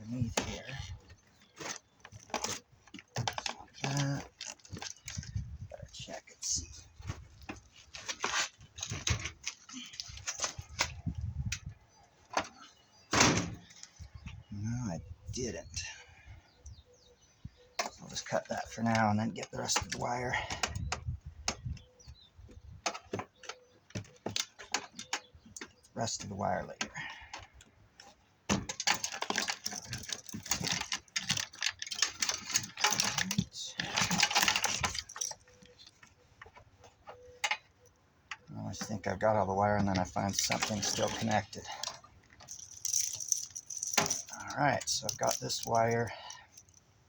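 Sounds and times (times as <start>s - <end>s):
wires and parts rattling: 0.0s - 16.0s, 17.7s - 46.9s.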